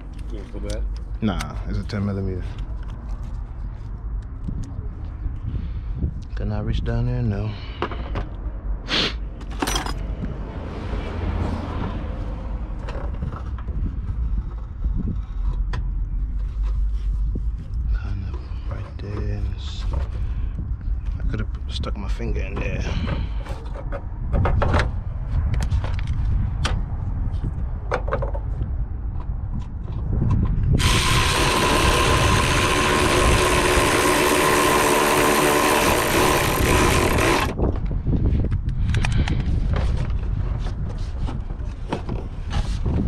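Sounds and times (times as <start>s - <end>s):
hand tools clicking and knocking: 30.8s - 37.6s
loud whirring hiss: 30.8s - 37.6s
ratchet clicking: 30.8s - 37.6s.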